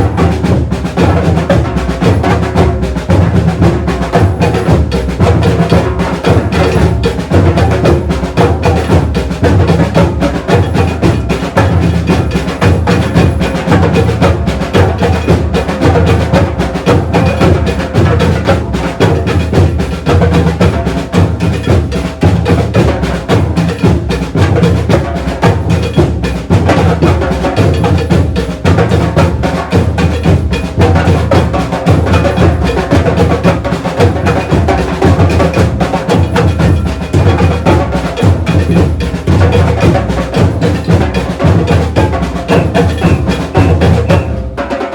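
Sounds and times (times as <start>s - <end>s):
deep bass drums beating: 0.0s - 44.5s
drum ensemble playing: 0.0s - 44.9s.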